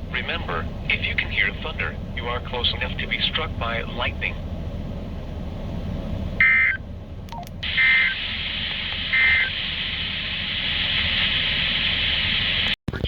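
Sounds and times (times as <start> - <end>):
radio static hiss: 7.6 - 13.0.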